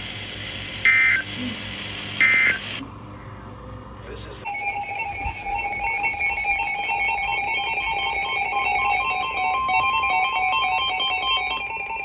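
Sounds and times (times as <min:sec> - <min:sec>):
background music: 0:04.5 - 0:12.0.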